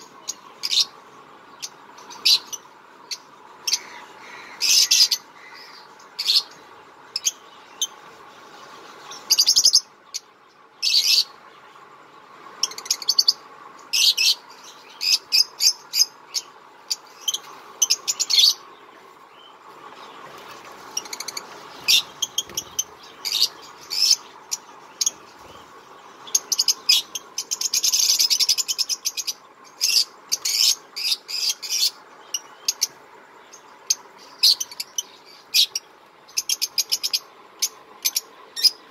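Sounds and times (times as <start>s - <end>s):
birds chattering: 0.0s - 38.9s
cage birds chirping: 0.0s - 38.9s.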